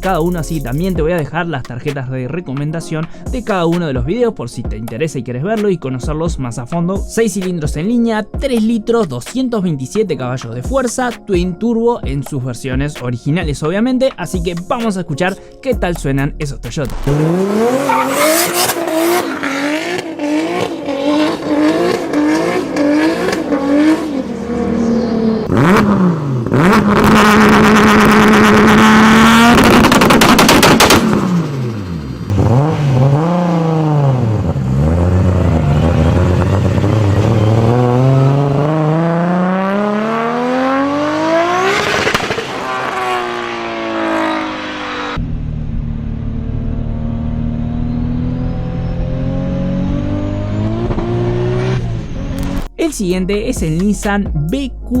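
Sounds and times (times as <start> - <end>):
car engine revving: 0.0 - 1.0, 15.8 - 52.8.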